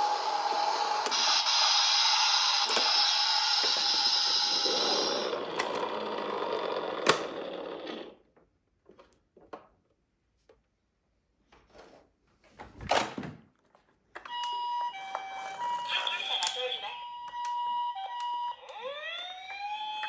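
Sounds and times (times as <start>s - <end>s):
toy car gears whirring: 0.0s - 8.2s.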